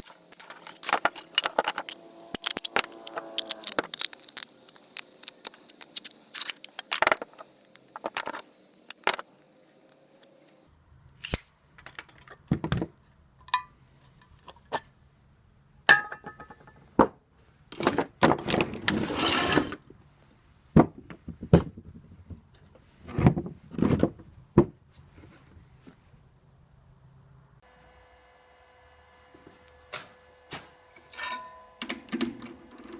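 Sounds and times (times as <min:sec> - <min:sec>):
hard objects knocking and clinking: 0:00.0 - 0:10.6.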